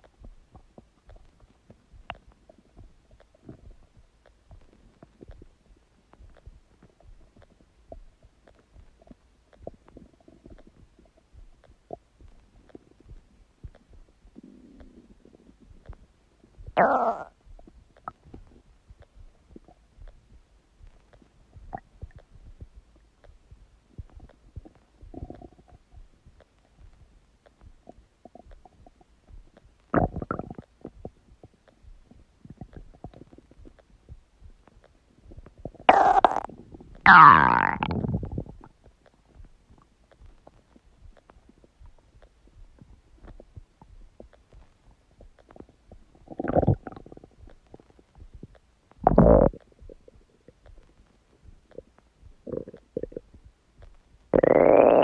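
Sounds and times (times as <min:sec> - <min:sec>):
soft pops and clicks: 0:00.0 - 0:55.0
stomach gurgling: 0:00.0 - 0:55.0
long stomach growl: 0:16.7 - 0:17.4, 0:24.0 - 0:25.8, 0:30.0 - 0:31.2, 0:35.6 - 0:38.7, 0:45.4 - 0:48.0, 0:49.0 - 0:50.8, 0:52.4 - 0:53.4, 0:54.3 - 0:55.0.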